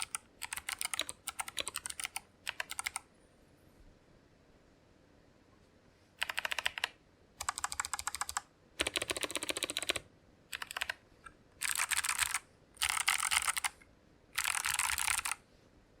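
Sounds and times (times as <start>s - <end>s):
mechanical keyboard clicking: 0.0s - 3.0s, 6.2s - 11.0s, 11.6s - 13.8s, 14.4s - 15.4s.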